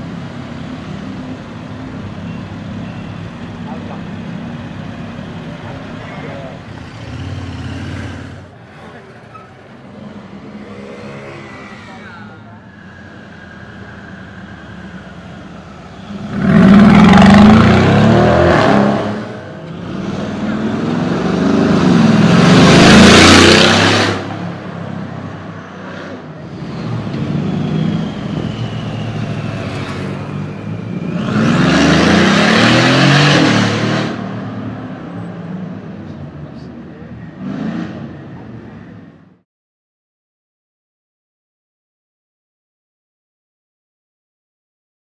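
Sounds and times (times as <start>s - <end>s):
street traffic: 0.0s - 39.5s
car engines accelerating hard: 16.0s - 39.0s.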